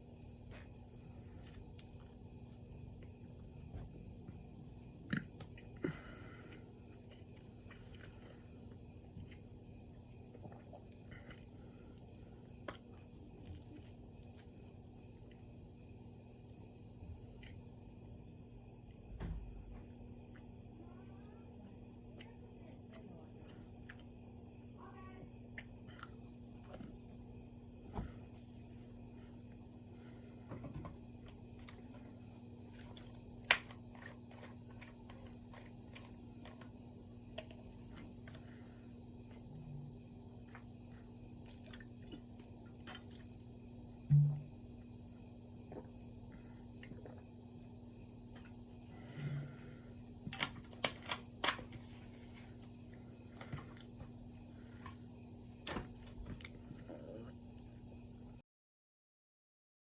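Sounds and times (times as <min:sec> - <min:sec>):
steady electrical hum: 0:00.0 - 0:58.4
person chewing food: 0:04.3 - 0:09.6, 0:31.2 - 0:36.7, 0:40.4 - 0:43.4, 0:46.7 - 0:48.6.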